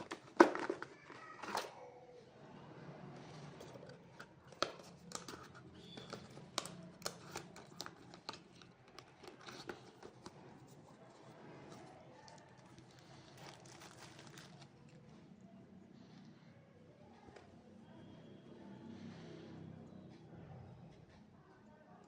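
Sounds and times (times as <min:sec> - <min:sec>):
packaging crinkling and tearing: 0:03.6 - 0:15.1.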